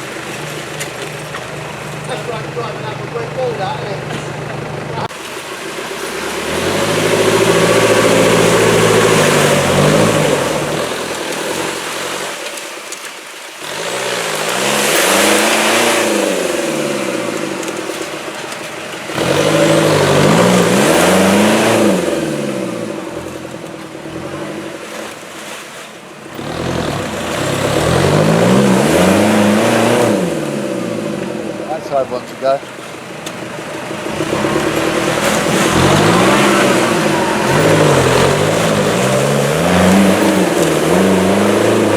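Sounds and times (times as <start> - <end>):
off-road vehicle engine revving: 0.0 - 12.6, 13.5 - 41.9.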